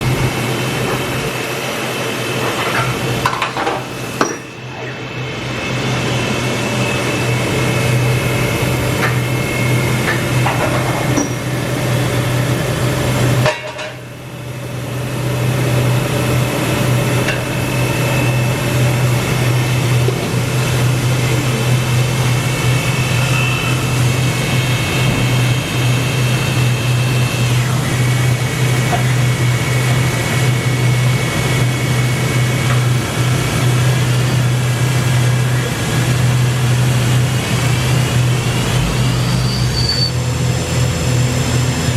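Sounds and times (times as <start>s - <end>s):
shop machinery humming: 0.0s - 41.9s.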